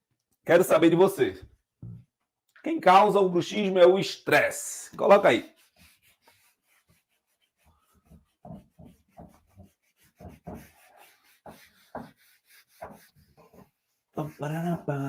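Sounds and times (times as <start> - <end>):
faint rubbing and scraping: 3.6 - 15.0.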